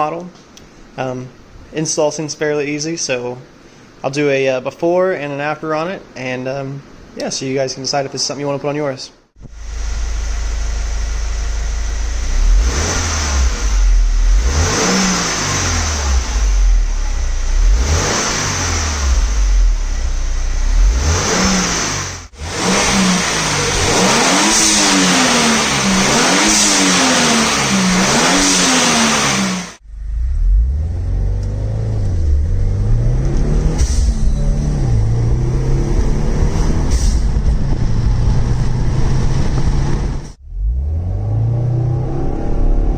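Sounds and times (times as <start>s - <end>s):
car engine revving: 9.4s - 42.9s.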